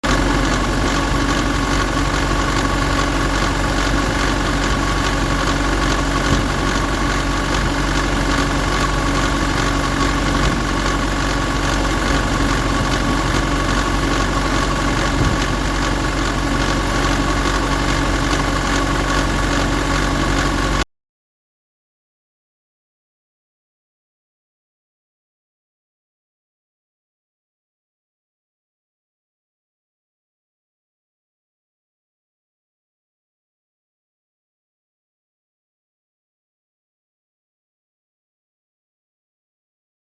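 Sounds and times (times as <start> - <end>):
diesel engine running: 0.0 - 20.8.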